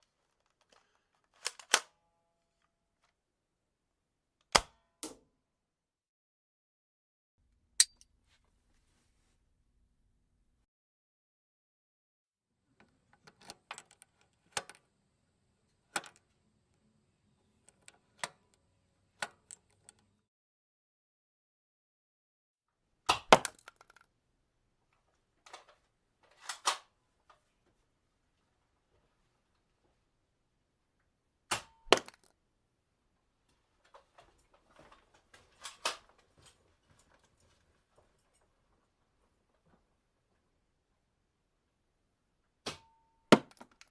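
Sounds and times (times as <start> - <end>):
gun metallic clicks and clacks: 1.4 - 1.9, 25.4 - 26.9, 33.9 - 37.3.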